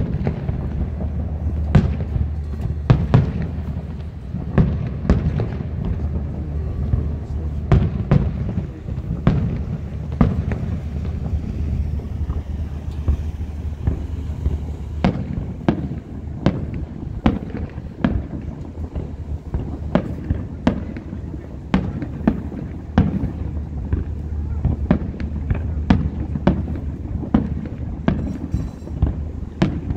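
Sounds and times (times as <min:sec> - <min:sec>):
fireworks bursting with sharp bangs: 0:00.0 - 0:29.9
low rumble: 0:00.0 - 0:29.9.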